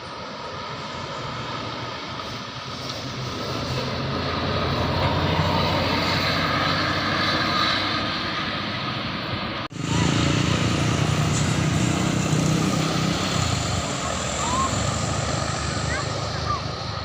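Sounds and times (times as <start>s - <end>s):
road traffic: 0.0s - 17.0s
bus diesel engine running: 8.0s - 17.0s.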